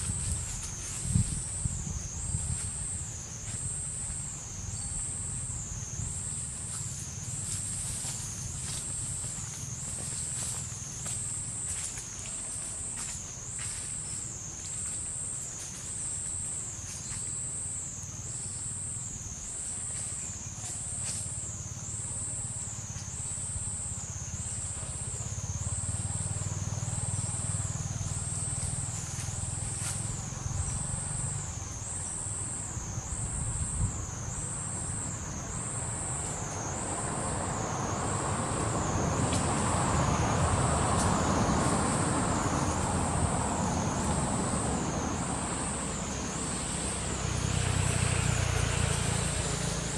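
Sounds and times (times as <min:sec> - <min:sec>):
motor vehicle rumble: 0:23.6 - 0:49.9.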